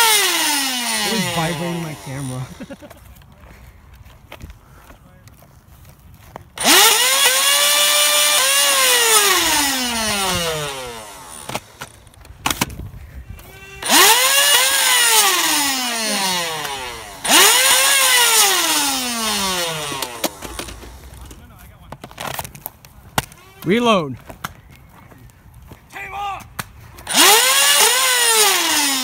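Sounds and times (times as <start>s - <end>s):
toy blaster motor whining: 0.0s - 2.9s, 6.6s - 12.6s, 13.3s - 21.4s, 23.2s - 23.8s, 27.0s - 29.0s.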